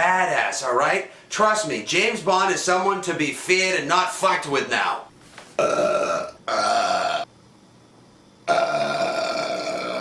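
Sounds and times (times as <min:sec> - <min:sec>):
man belching: 0:05.6 - 0:07.3, 0:08.5 - 0:10.0.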